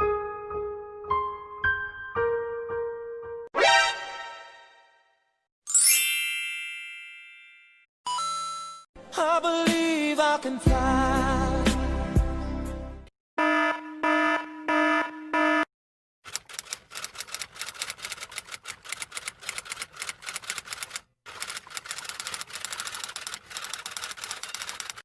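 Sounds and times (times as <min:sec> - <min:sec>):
buzzer alarm beeping: 0:13.4 - 0:15.7
typing on keys: 0:16.3 - 0:25.0.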